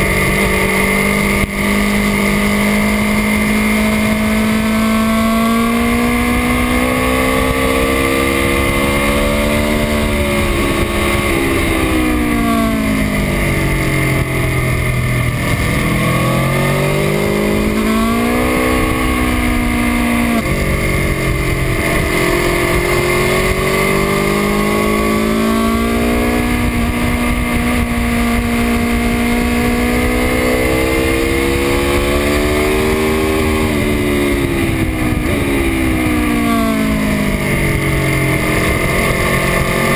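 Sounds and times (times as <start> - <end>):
motorcycle engine revving: 0.0 - 39.9
wind noise: 0.0 - 39.9.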